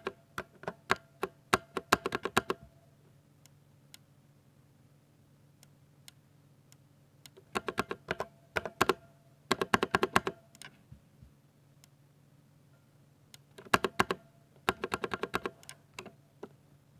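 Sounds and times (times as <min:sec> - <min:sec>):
mechanical keyboard typing: 0:07.4 - 0:10.4, 0:13.6 - 0:16.1.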